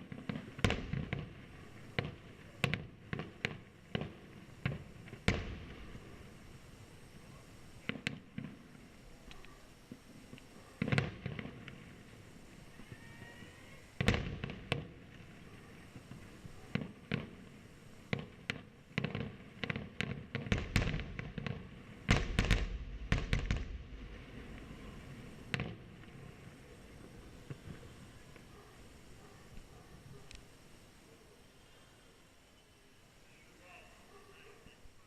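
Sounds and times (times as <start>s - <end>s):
fireworks banging: 0.0s - 9.3s, 9.9s - 12.2s, 13.9s - 28.5s.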